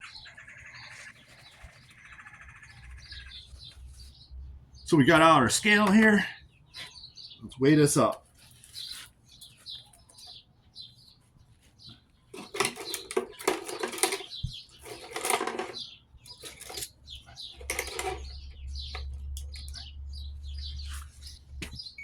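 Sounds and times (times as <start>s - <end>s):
birds chirping: 0.0s - 22.0s
copper windings clattering: 5.6s - 6.2s, 12.4s - 19.8s.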